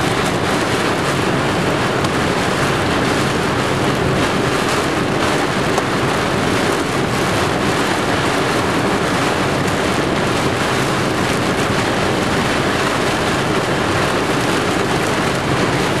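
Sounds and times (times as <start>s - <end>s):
heavy rain on car roof: 0.0s - 16.0s
tyres on wet road: 0.0s - 16.0s.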